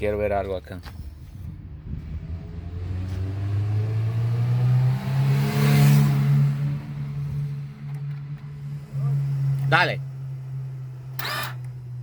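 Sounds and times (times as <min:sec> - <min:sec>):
car engine cranking: 0:06.6 - 0:12.0.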